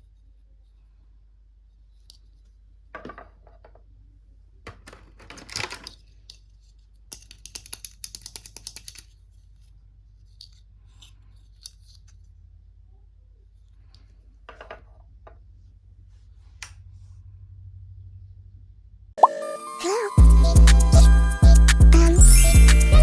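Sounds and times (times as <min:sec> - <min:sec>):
plastic toy parts rustling and tapping: 0:01.8 - 0:12.4, 0:13.7 - 0:15.5.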